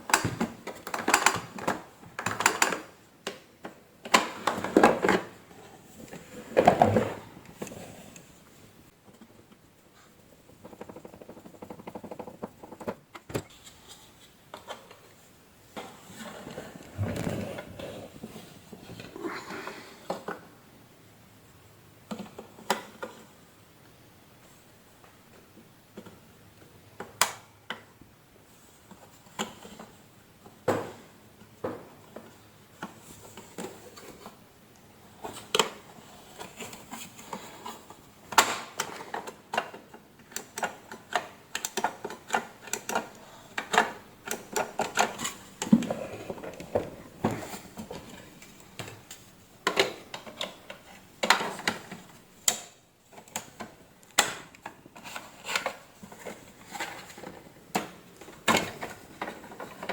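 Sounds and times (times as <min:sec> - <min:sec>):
hard plastic parts clicking: 0:35.2 - 0:59.9.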